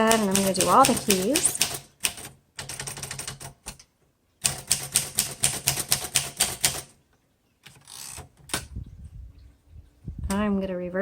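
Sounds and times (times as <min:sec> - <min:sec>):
manual typewriter typing: 0:00.0 - 0:07.0.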